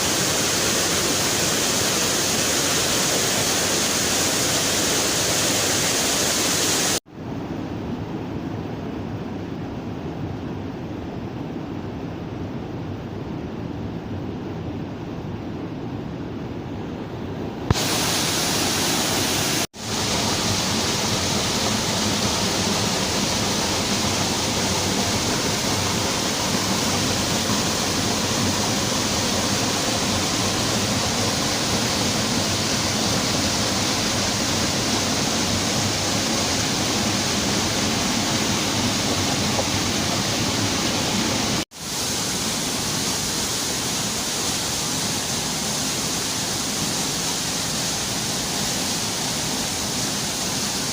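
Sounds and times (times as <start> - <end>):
waterfall rushing: 0.0 - 7.0, 17.7 - 50.9.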